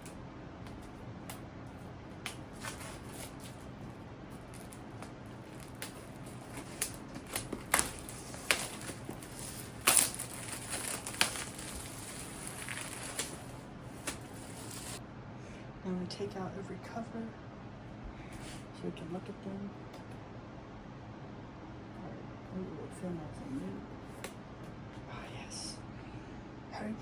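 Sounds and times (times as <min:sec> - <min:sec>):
packaging crinkling and rustling: 0:02.3 - 0:15.0.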